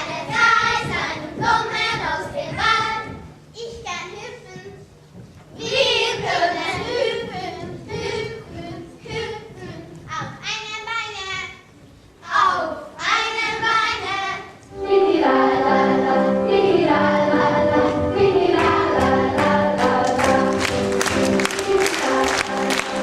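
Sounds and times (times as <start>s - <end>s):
children singing: 12.3s - 23.0s
instrumental music: 13.2s - 23.0s.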